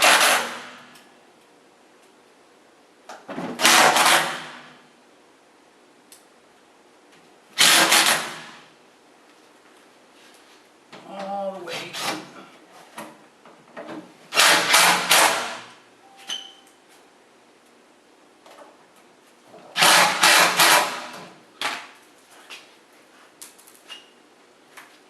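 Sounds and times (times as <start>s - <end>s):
power screwdriver driving screws: 0.0s - 0.7s, 3.6s - 4.6s, 7.6s - 8.5s, 14.3s - 15.6s, 19.8s - 21.2s.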